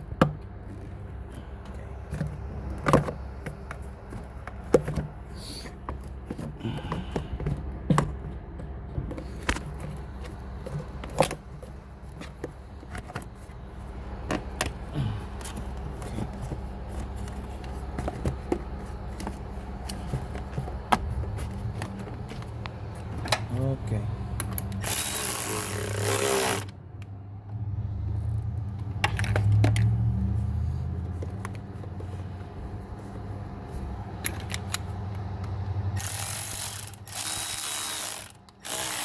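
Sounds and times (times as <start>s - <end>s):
clicks of car parts handled: 34.2s - 35.7s.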